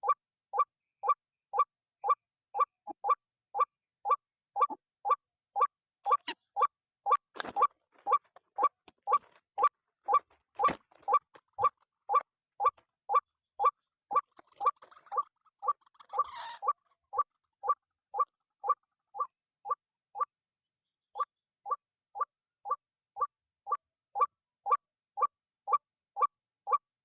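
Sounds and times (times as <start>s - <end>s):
waterhen call: 6.1s - 6.4s, 7.1s - 19.3s.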